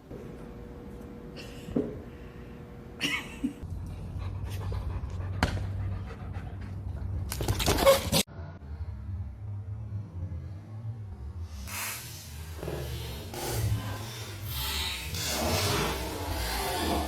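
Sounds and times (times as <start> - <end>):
dog panting: 3.7 - 7.2.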